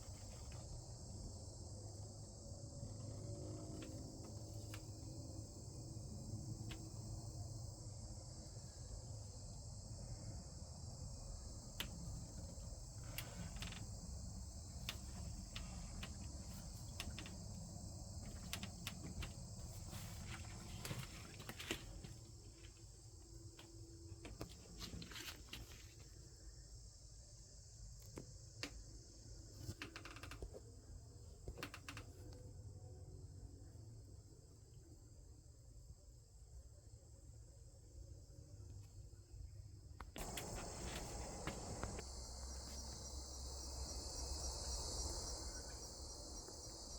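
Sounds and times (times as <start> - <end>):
crickets trilling: 0.0 - 46.9.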